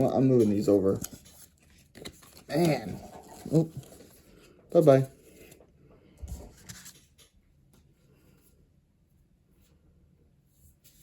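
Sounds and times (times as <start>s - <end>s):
trading cards rustling: 0.0s - 5.6s.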